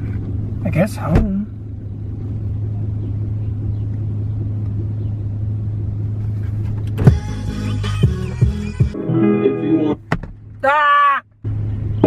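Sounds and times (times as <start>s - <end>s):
car engine rumbling: 0.0s - 12.0s
music: 7.0s - 10.0s.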